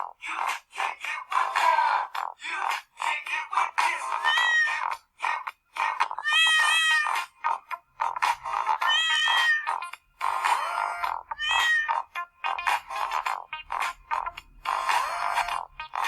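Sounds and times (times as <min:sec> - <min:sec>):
chopped cat meows: 0:04.2 - 0:04.8, 0:06.2 - 0:07.2, 0:08.8 - 0:09.8, 0:11.3 - 0:12.0
electronic dance music: 0:07.2 - 0:09.3, 0:10.2 - 0:16.0.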